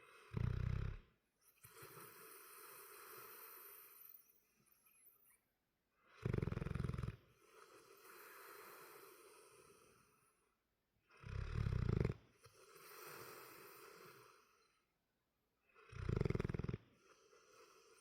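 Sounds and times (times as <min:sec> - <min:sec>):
loud rattling snores: 0:00.0 - 0:04.1, 0:06.1 - 0:10.0, 0:11.1 - 0:14.6, 0:15.8 - 0:18.0.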